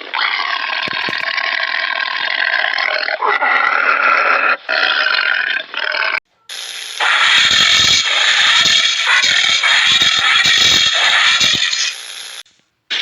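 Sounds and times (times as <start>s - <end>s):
animal calling throatily: 0.0s - 6.2s.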